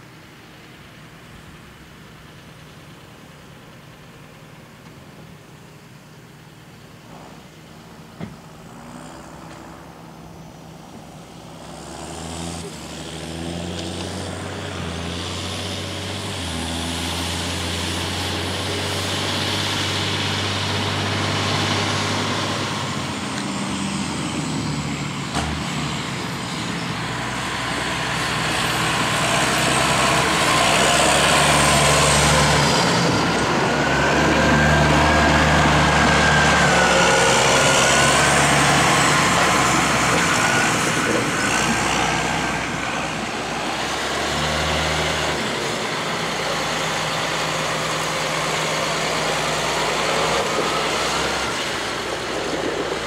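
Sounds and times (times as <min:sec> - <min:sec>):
vehicle engine running: 0:00.0 - 0:53.0
rising whine: 0:07.0 - 0:53.0.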